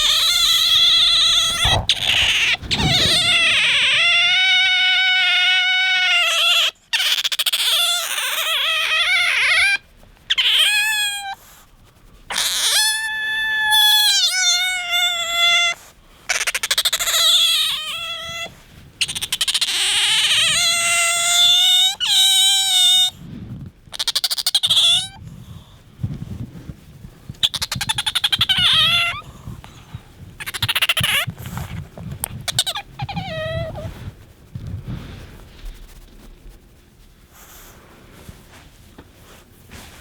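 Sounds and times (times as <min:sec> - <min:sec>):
otter squeaking: 0:00.0 - 0:05.3, 0:27.4 - 0:29.2, 0:30.4 - 0:33.9.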